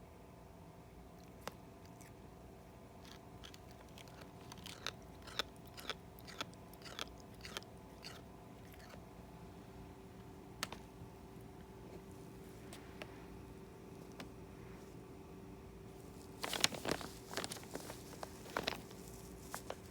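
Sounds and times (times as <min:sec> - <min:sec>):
cat grinding teeth clicks: 0:03.1 - 0:09.0.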